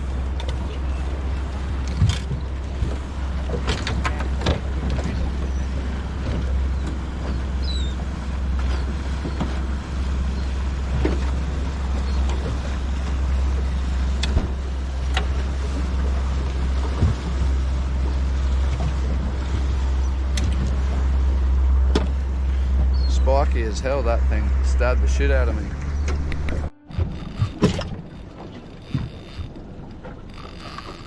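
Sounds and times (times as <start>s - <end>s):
boat engine rumble: 0.0s - 31.0s.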